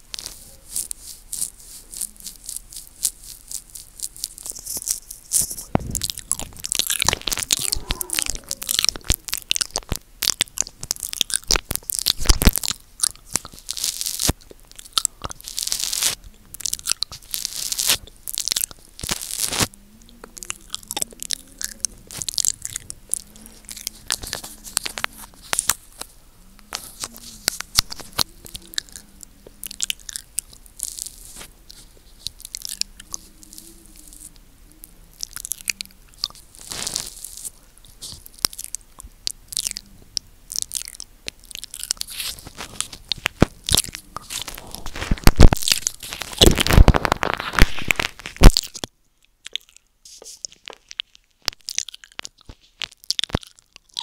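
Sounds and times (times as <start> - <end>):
wet mouth clicks and smacks: 0.1 - 54.0.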